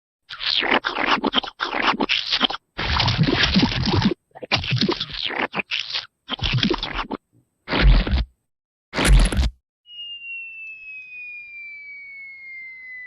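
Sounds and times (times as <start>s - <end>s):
scratchy scraping noises: 0.3s - 8.3s.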